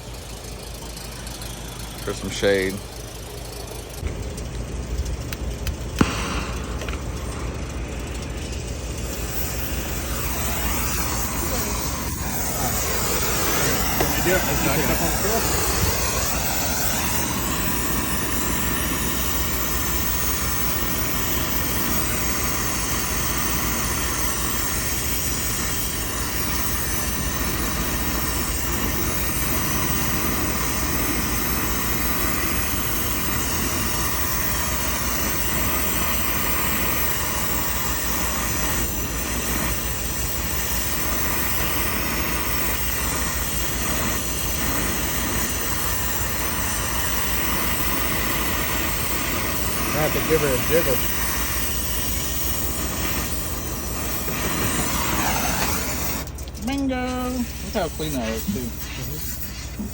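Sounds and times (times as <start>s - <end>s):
low even hum: 0.0s - 32.8s
machinery drone: 0.0s - 59.9s.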